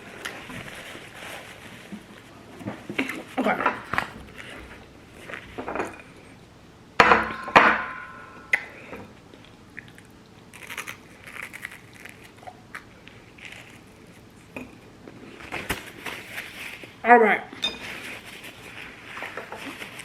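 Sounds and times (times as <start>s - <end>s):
sharp knocks with ringing tone: 7.0s - 8.5s
dishes and cutlery clinking: 17.6s - 18.2s.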